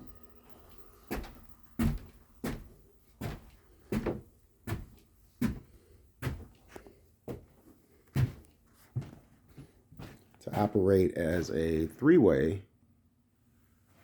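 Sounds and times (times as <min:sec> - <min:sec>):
heavy footsteps on wooden stairs: 0:01.1 - 0:10.8.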